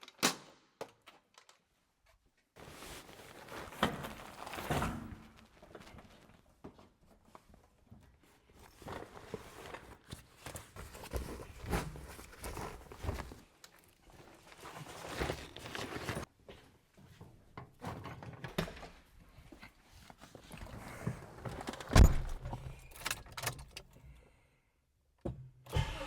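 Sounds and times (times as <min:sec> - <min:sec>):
rustling handling noises: 0:01.3 - 0:18.1, 0:19.2 - 0:21.9.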